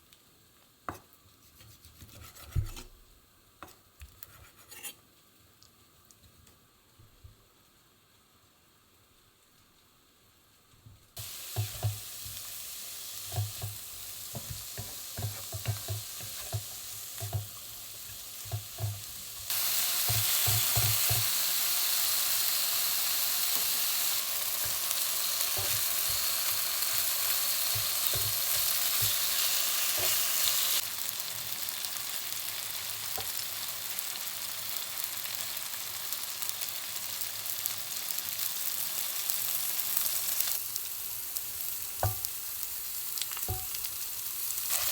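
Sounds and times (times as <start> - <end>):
food sizzling in a pan: 10.0 - 44.9.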